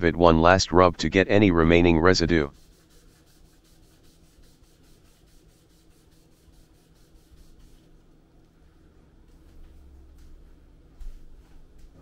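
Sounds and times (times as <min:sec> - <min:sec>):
paper towel rubbing metal: 0:02.2 - 0:08.0.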